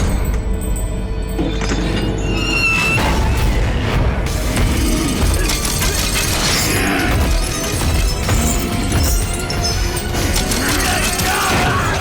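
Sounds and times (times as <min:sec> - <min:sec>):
soundtrack music with low rumble: 0:00.0 - 0:12.0
sharp hits and clashes: 0:03.0 - 0:12.0.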